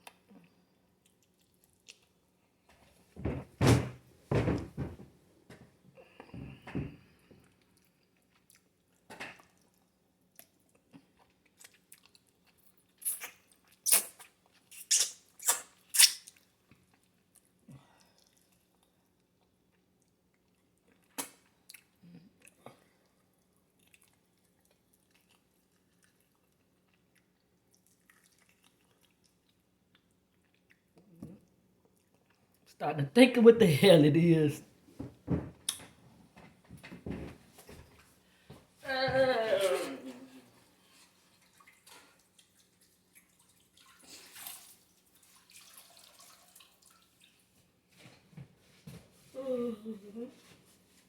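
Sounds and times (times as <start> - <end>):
quiet chewing: 0.0 - 2.2, 7.1 - 14.9, 16.3 - 32.7.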